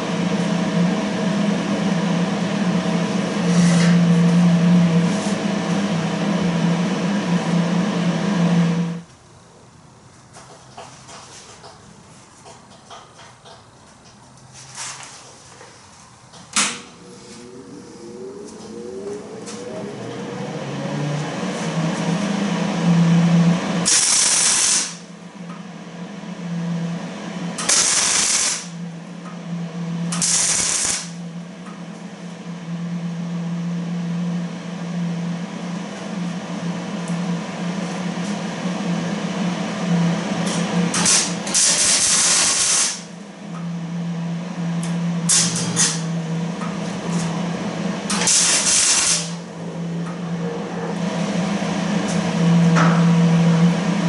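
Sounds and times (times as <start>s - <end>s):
steady low hum: 0.0s - 54.0s
arc welding crackling hiss: 23.9s - 25.0s, 27.6s - 28.8s, 30.1s - 31.2s, 41.0s - 43.1s, 48.2s - 49.4s.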